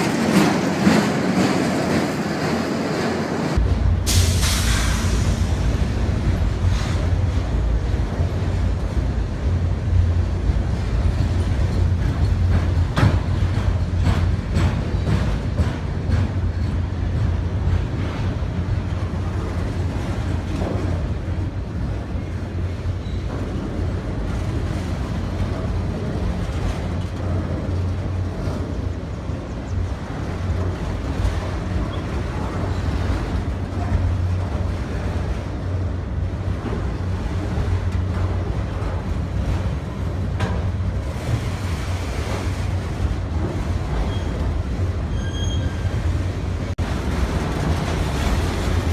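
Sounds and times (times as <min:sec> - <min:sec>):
train rumbling: 0:00.0 - 0:48.9.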